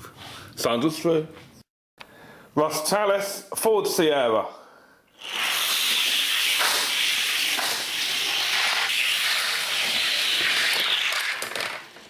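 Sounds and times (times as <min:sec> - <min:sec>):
toy car wheels rolling on track: 0:05.2 - 0:12.0.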